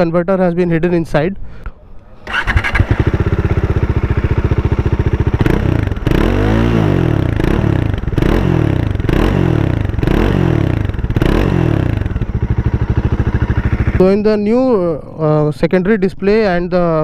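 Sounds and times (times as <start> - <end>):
motorcycle engine revving: 2.2 - 14.8.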